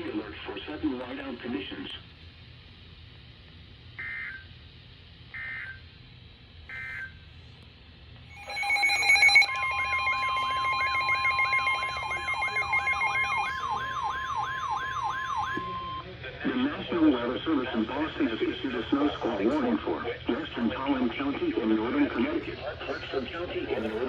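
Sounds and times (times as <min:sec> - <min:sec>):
swooping alert tone: 0:08.3 - 0:15.6
high warbling alert tones: 0:08.3 - 0:16.0
short electronic beeps: 0:08.3 - 0:16.0
steady alert tone: 0:08.3 - 0:16.0.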